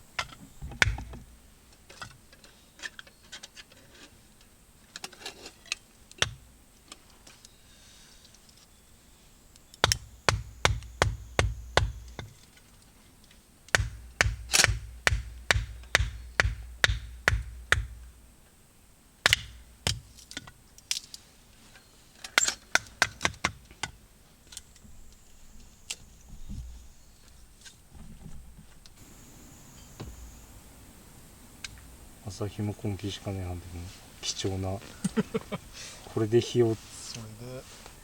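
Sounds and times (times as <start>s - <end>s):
steel knocking on wood: 13.8s - 18.0s.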